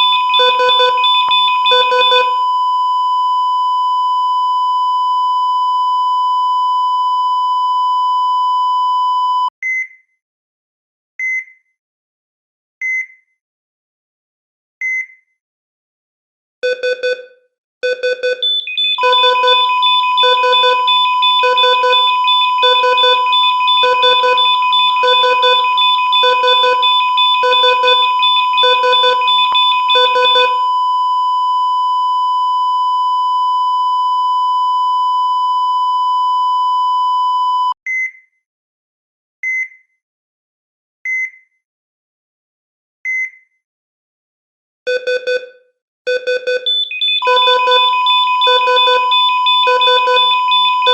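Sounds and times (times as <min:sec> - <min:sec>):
steady alarm tone: 0:00.0 - 0:02.6, 0:18.4 - 0:35.2, 0:46.7 - 0:50.9
continuous flatline tone: 0:00.0 - 0:07.8, 0:18.4 - 0:37.7, 0:46.7 - 0:50.9
heart monitor beeps: 0:00.0 - 0:09.9, 0:16.6 - 0:38.2, 0:46.1 - 0:50.9.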